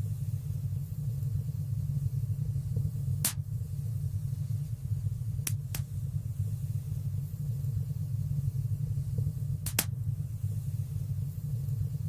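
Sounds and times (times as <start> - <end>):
fire crackle: 3.2 - 3.8, 5.3 - 6.1, 9.6 - 10.1
wood fire rumbling: 7.6 - 10.3.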